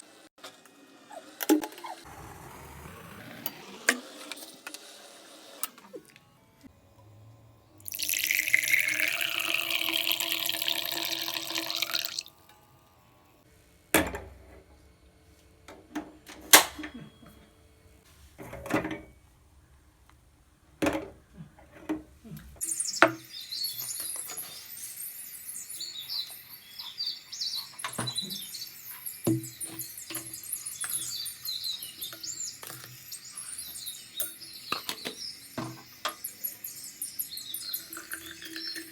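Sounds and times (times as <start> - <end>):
water running from a tap: 7.8 - 12.3, 35.8 - 38.9
faint high twittering: 22.6 - 38.9
kitchen utensils clinking: 22.6 - 38.9.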